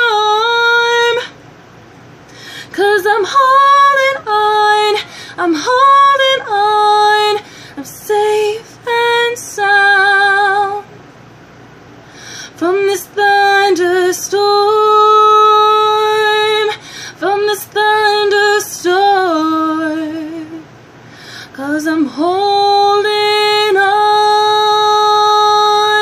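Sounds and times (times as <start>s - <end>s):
woman singing unaccompanied: 0.0s - 1.4s, 2.6s - 11.0s, 12.5s - 20.7s, 21.5s - 26.0s
singer breathing: 2.3s - 2.8s, 5.0s - 5.4s, 7.4s - 7.8s, 12.0s - 12.6s, 16.8s - 17.2s, 21.0s - 21.6s.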